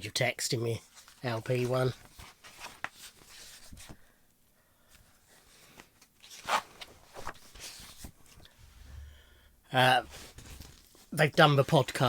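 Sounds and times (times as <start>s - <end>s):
paper pages rustling: 0.8s - 4.0s, 5.5s - 8.6s, 10.1s - 11.1s.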